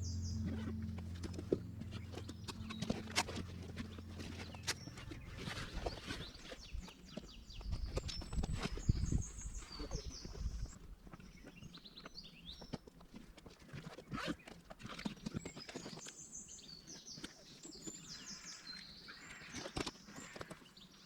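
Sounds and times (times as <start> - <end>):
birds chirping: 0.0 - 6.9.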